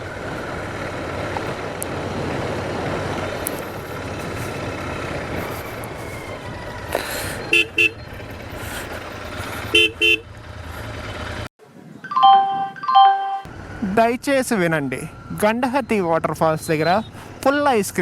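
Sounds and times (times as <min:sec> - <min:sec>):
vehicle horn beeps: 0:07.5 - 0:08.1, 0:09.7 - 0:10.3.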